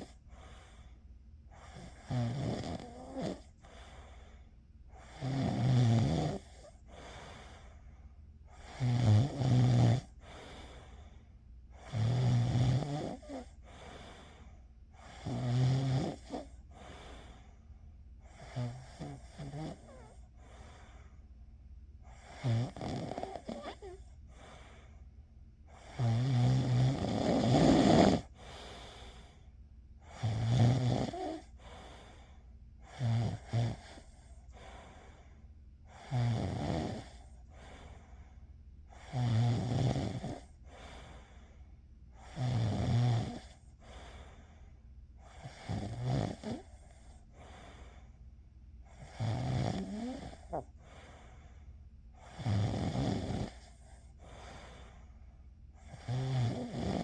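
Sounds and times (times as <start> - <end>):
person snoring: 1.5 - 4.0, 5.0 - 7.5, 8.5 - 11.0, 11.8 - 14.3, 15.0 - 17.5, 18.2 - 20.7, 22.1 - 24.7, 25.7 - 29.4, 30.0 - 32.2, 32.8 - 34.6, 35.9 - 37.9, 38.9 - 41.2, 42.2 - 44.3, 45.2 - 48.0, 48.9 - 51.5, 52.2 - 55.1, 55.8 - 57.0.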